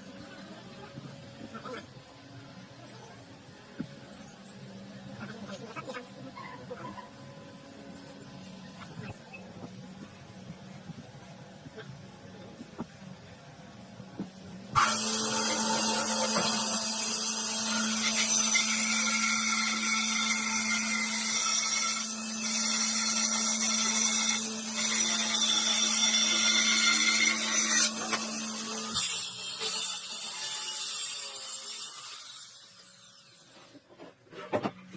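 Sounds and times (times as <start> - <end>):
electric power tool whining: 14.7 - 33.8.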